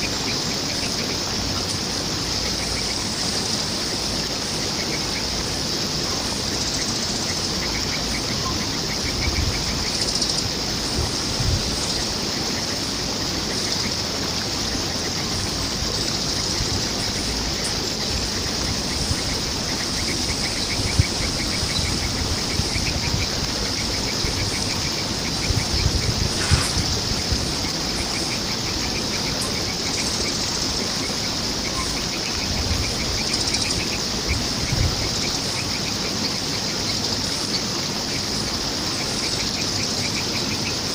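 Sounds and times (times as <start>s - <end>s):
flowing water: 0.0s - 40.9s.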